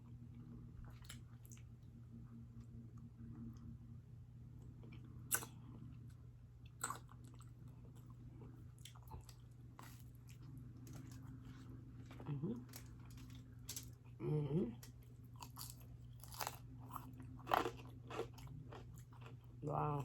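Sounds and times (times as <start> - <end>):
chewing and biting food: 6.6 - 11.3, 15.3 - 20.0.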